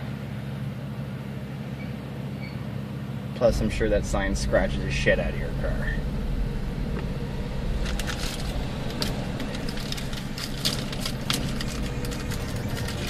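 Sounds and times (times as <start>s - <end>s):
car engine and road hum: 0.0s - 13.0s
keys jangling and rattling: 7.8s - 13.0s.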